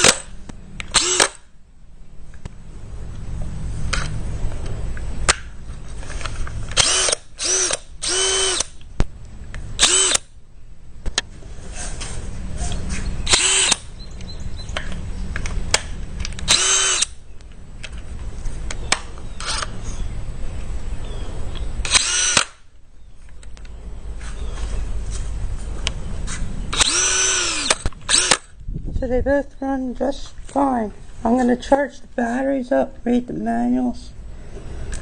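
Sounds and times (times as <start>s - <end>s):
power tool motor whirring: 0.0s - 0.3s, 0.9s - 1.5s, 6.8s - 8.8s, 9.8s - 10.3s, 13.2s - 13.9s, 16.4s - 17.2s, 21.8s - 22.6s, 26.7s - 28.5s.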